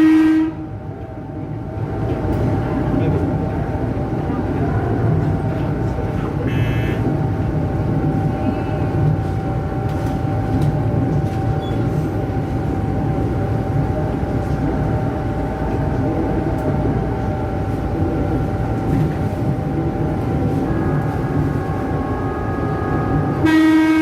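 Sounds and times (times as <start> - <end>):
train motor hum: 0.0 - 24.0
train wheels rumbling on rail: 0.0 - 24.0.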